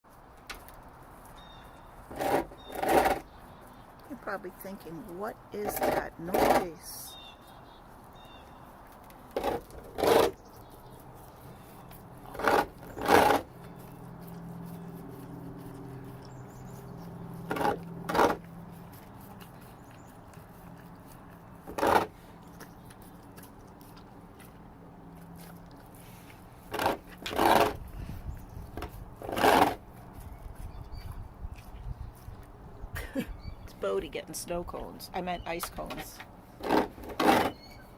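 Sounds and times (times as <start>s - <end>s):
dog crunching ice: 0.6s - 7.0s, 8.4s - 28.0s, 28.6s - 30.6s, 36.6s - 37.8s.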